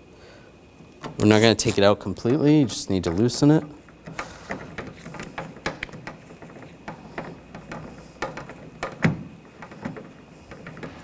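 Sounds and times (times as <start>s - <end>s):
ratchet clicking: 1.0s - 1.8s.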